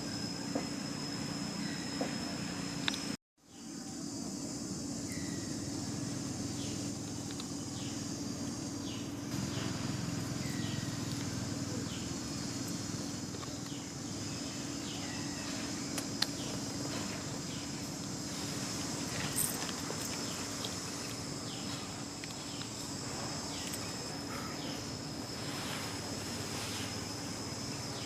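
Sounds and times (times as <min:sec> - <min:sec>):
outdoor background hum: 0:00.0 - 0:28.0.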